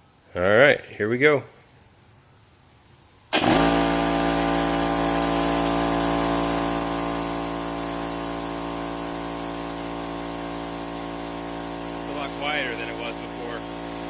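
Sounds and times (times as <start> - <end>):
air compressor running: 3.3 - 14.0.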